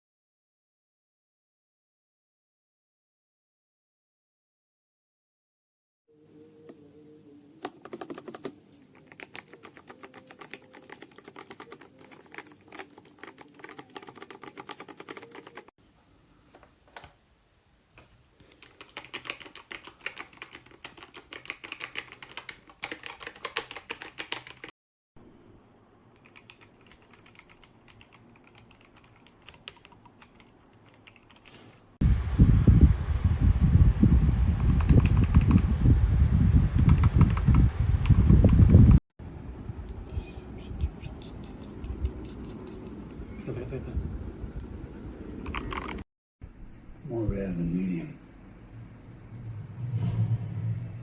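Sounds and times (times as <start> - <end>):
loud rushing noise: 48.8 - 51.0.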